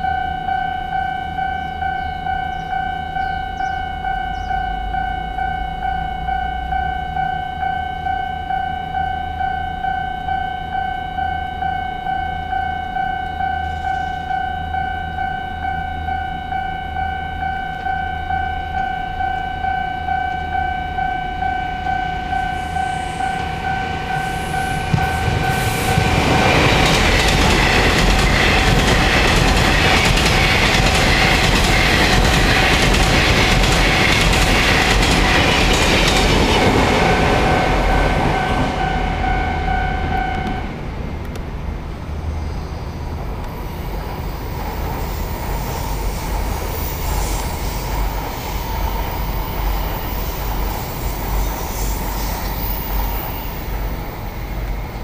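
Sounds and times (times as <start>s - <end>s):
level crossing warning tone: 0.0s - 41.0s
train wheels clattering: 22.4s - 38.8s.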